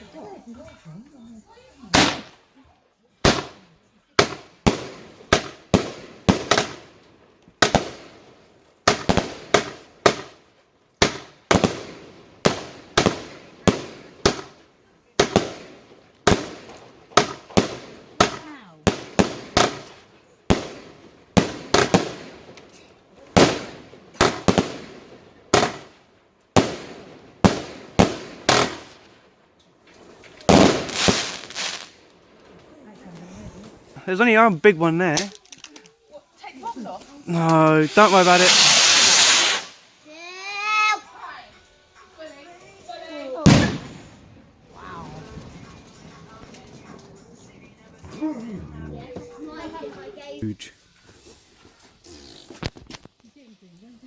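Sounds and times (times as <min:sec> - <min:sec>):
fireworks bangs: 0:01.9 - 0:02.4, 0:03.2 - 0:35.3, 0:37.0 - 0:40.0, 0:43.3 - 0:48.1.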